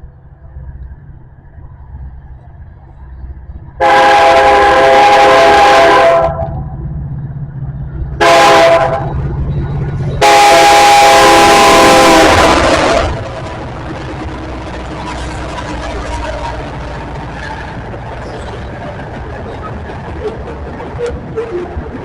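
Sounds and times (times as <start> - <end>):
low rumble of train: 0.0 - 22.0
locomotive air horn blasts: 3.8 - 6.5, 8.2 - 9.2, 10.2 - 13.2.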